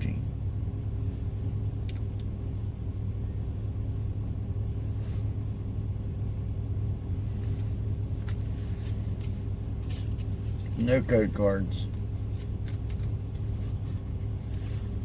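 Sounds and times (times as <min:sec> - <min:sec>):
car engine rumble inside cabin: 0:00.0 - 0:15.0.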